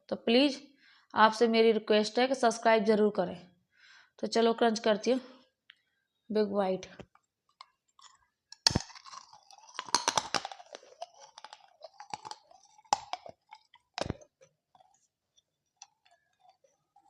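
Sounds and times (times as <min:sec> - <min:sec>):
crunching and chewing food: 0:07.0 - 0:17.0.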